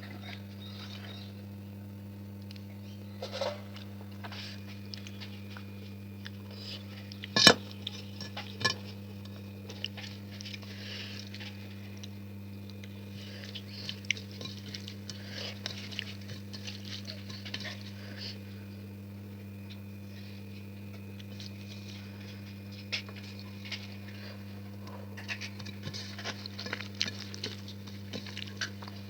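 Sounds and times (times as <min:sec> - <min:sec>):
steady low hum: 0:00.0 - 0:29.0
chewing and crunching: 0:02.4 - 0:29.0
clicks against a plate: 0:07.4 - 0:09.0.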